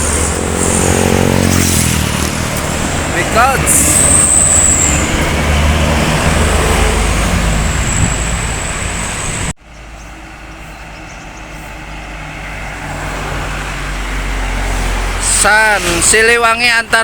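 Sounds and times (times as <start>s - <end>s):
buses driving past: 0.0s - 17.0s.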